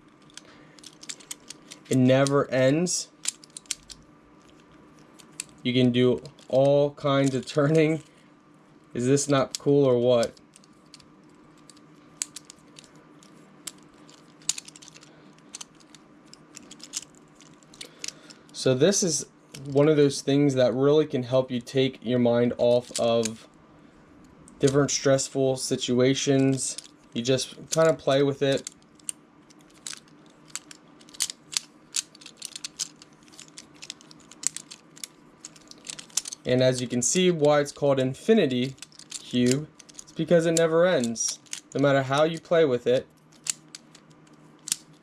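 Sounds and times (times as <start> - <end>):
faint steady hum: 0.0 - 45.0
fidget toy blocks clicking: 0.2 - 2.4, 3.2 - 5.6, 11.6 - 18.3, 22.8 - 23.4, 27.7 - 37.6, 38.4 - 42.6, 43.3 - 45.0.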